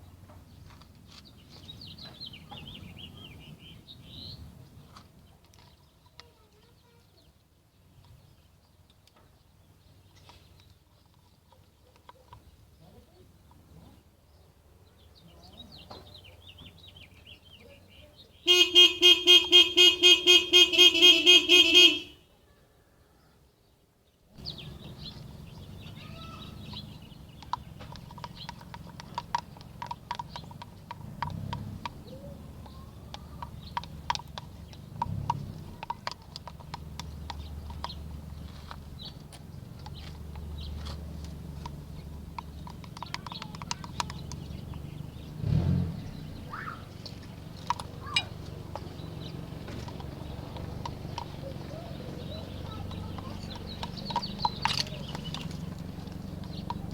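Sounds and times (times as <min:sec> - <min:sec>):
small clicks and handling noises: 0:04.9 - 0:06.8, 0:26.5 - 0:44.9, 0:47.0 - 0:56.9
rapidly pulsing horn tone: 0:18.5 - 0:22.2.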